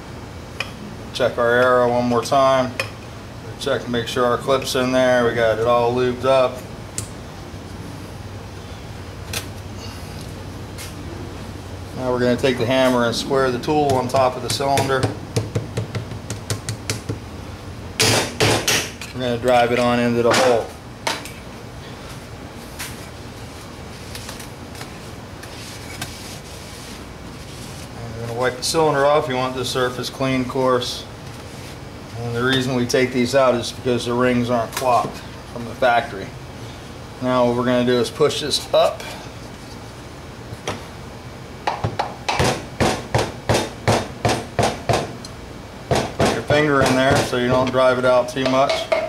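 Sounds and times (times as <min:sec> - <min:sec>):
steady low hum: 0:00.0 - 0:49.0.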